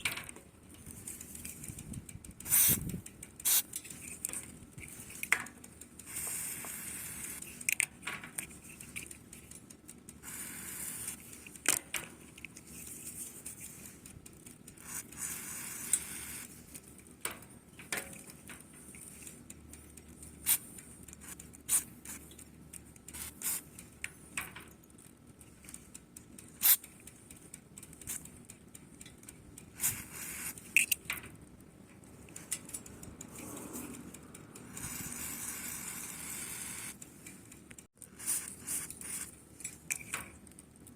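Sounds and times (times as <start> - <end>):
sharp clicks and taps: 0.0 - 36.2
aerosol spray hissing: 2.5 - 2.8, 6.1 - 7.4, 10.2 - 11.2, 29.8 - 30.5, 34.9 - 36.9.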